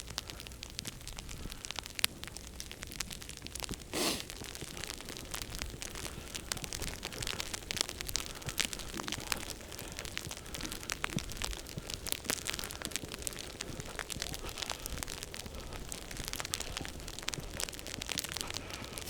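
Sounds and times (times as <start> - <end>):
soft steady hiss: 0.0 - 19.0
sleet pattering on clothing: 3.8 - 19.0
boots crunching through snow: 4.0 - 4.3.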